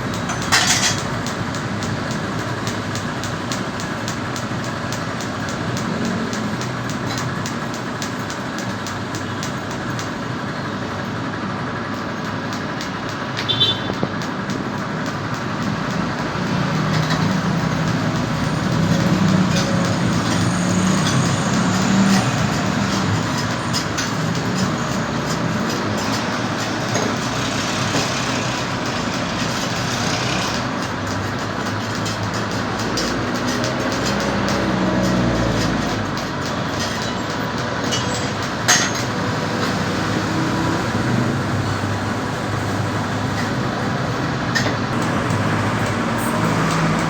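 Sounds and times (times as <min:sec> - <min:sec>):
engine running through muffler: 0:15.8 - 0:31.3.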